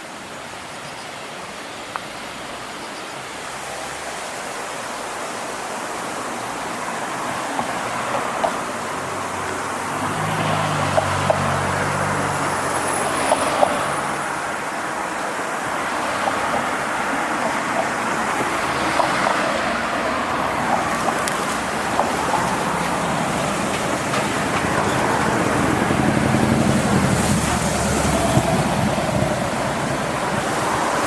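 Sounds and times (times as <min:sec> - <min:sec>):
road traffic rushing: 0:00.0 - 0:31.0
vehicle engine passing: 0:18.0 - 0:31.0.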